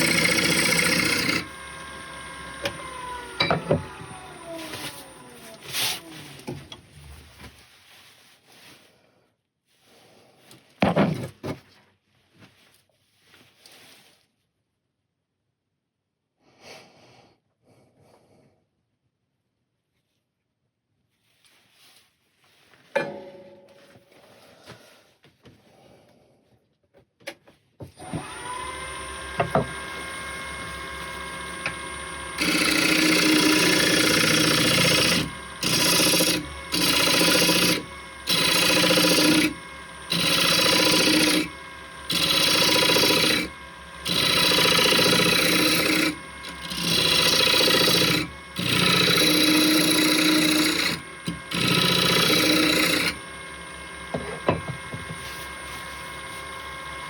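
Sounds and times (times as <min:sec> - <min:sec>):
turning tool rasping on wood: 0:00.0 - 0:06.6, 0:28.2 - 0:57.0
lathe motor humming: 0:00.0 - 0:07.1, 0:28.0 - 0:57.0.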